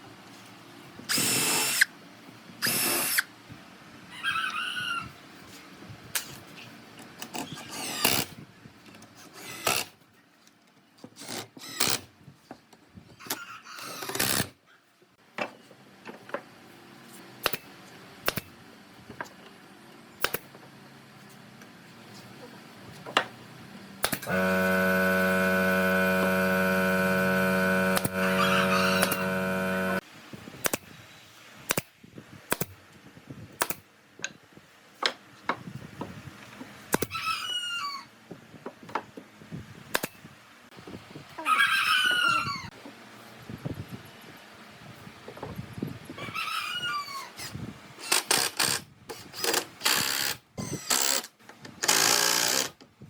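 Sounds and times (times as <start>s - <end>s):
power tool motor running: 24.2s - 30.0s
rooster crowing: 28.2s - 30.0s, 41.4s - 42.7s.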